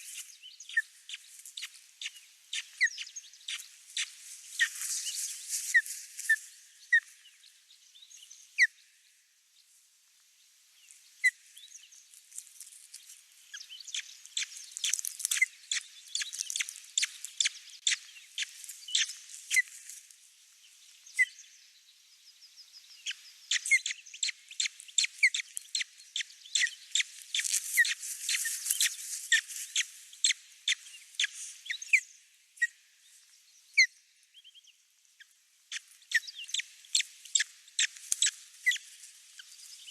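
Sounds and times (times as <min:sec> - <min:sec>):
baby birds cheeping: 0:13.5 - 0:19.7, 0:23.0 - 0:32.1.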